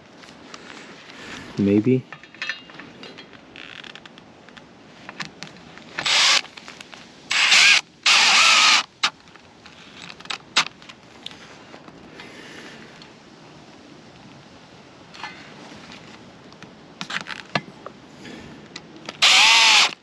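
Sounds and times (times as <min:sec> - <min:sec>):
power drill running: 0:06.0 - 0:06.4, 0:07.3 - 0:08.9, 0:19.2 - 0:20.0.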